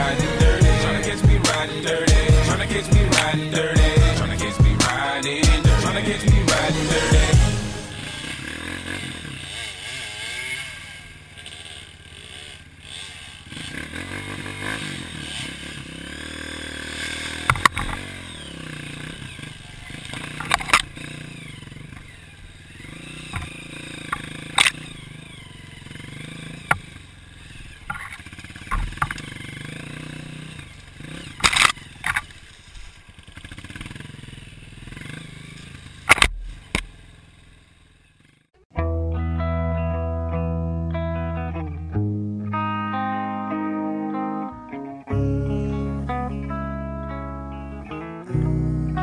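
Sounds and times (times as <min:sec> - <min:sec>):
motorcycle engine revving: 0:00.0 - 0:38.7, 0:40.4 - 0:49.0.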